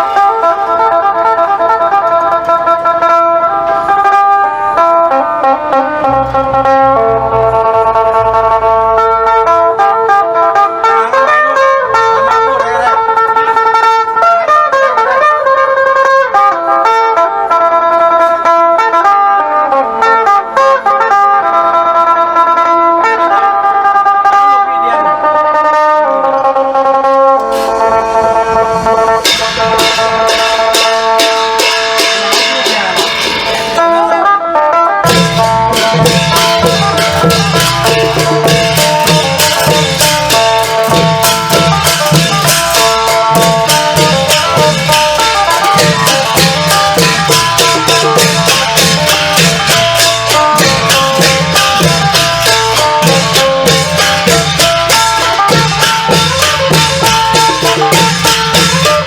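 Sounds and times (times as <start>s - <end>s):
plucked lute melody: 0.0s - 59.0s
long drums beating: 27.8s - 34.2s, 35.0s - 59.0s.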